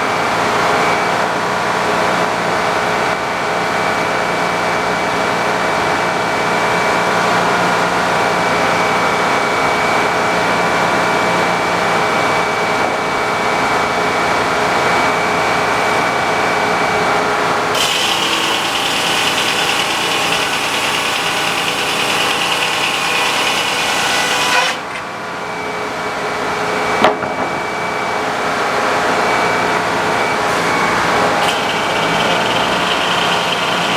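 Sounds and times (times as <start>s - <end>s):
sawmill engine running: 17.0s - 25.6s, 29.1s - 33.9s
saw cutting through log: 17.8s - 25.1s, 30.7s - 33.9s.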